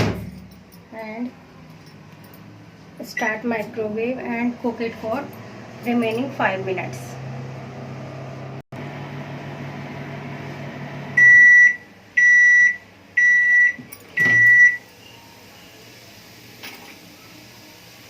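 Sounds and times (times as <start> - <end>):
microwave oven humming: 1.4 - 18.0
long loud beeps: 11.2 - 15.2.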